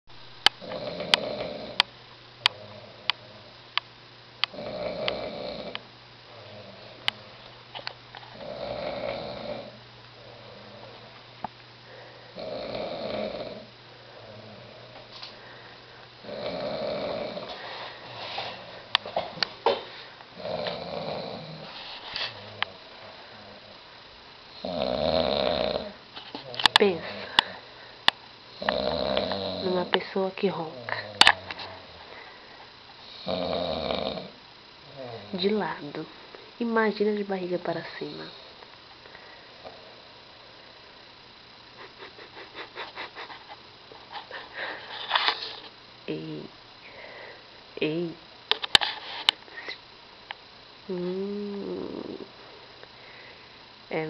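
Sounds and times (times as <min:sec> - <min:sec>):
man snoring: 0:00.6 - 0:03.5, 0:04.5 - 0:07.4, 0:08.3 - 0:11.1, 0:12.3 - 0:15.0, 0:16.2 - 0:17.6, 0:20.4 - 0:21.7, 0:24.5 - 0:27.6, 0:28.5 - 0:30.0, 0:30.6 - 0:32.1, 0:33.0 - 0:35.5, 0:50.9 - 0:52.3.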